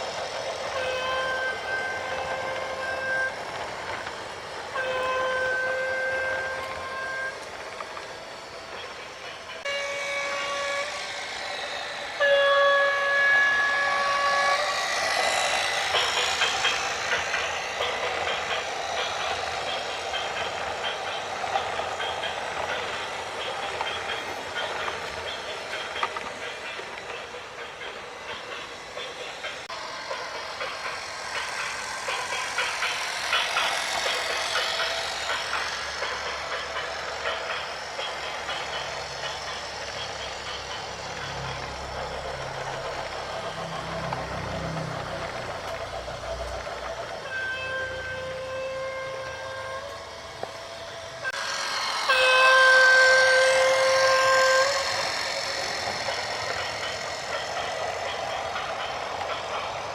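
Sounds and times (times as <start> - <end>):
vehicle horn blast: 47.3 - 49.9.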